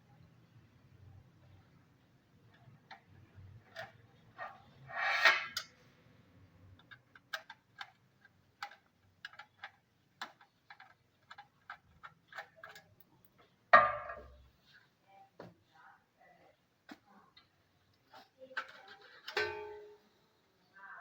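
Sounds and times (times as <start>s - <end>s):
metallic clicks of screws: 6.8s - 13.1s.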